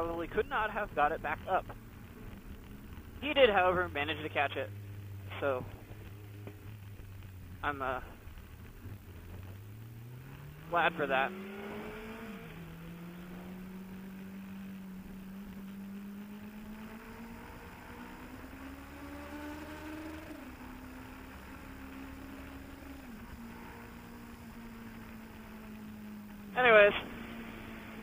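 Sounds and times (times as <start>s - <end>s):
motorcycle engine revving: 0.0s - 28.0s.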